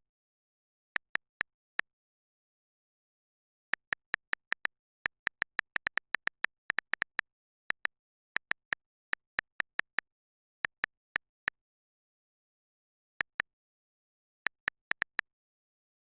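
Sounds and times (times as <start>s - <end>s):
phone keyboard clicks: 3.8s - 10.0s, 14.5s - 15.3s.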